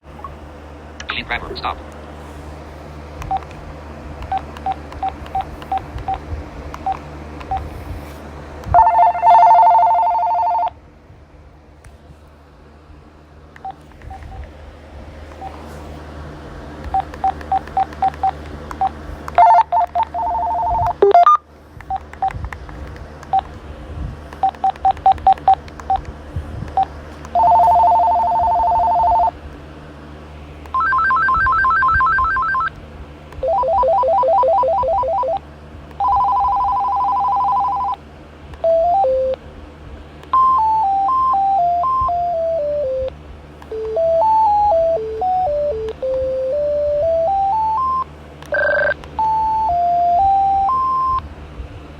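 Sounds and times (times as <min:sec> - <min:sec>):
melodic ringtones: 0:08.8 - 0:10.7, 0:38.6 - 0:39.4, 0:40.3 - 0:43.1, 0:43.7 - 0:51.2
warbling trill telephone rings: 0:08.8 - 0:10.8, 0:19.4 - 0:21.4, 0:27.4 - 0:29.3, 0:30.8 - 0:32.7, 0:33.4 - 0:35.4, 0:36.0 - 0:38.0, 0:40.4 - 0:43.0, 0:43.7 - 0:51.2
short button beeps: 0:48.8 - 0:51.2.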